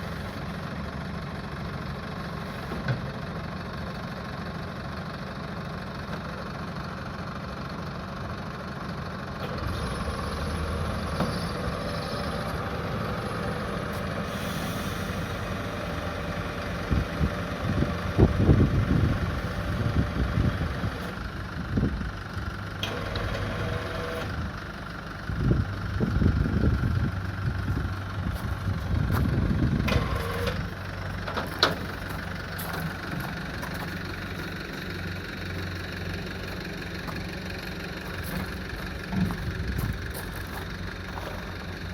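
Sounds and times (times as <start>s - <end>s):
vehicle engine idling: 0.0s - 41.9s
low rumbles: 24.3s - 41.9s.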